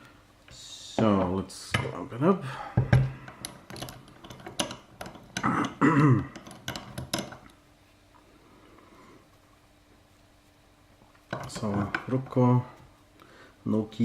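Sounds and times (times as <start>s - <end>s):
lock and tools clicking: 3.3s - 7.6s.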